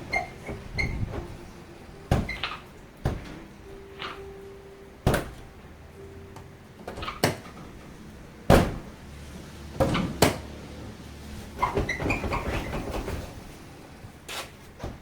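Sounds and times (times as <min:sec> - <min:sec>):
car door clunking shut: 0:05.0 - 0:05.5, 0:08.5 - 0:09.0.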